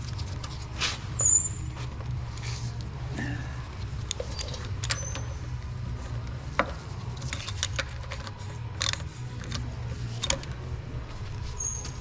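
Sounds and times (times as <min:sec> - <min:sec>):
steady low hum: 0:00.0 - 0:12.0
tools and metal parts clicking: 0:03.9 - 0:05.6, 0:06.2 - 0:10.7.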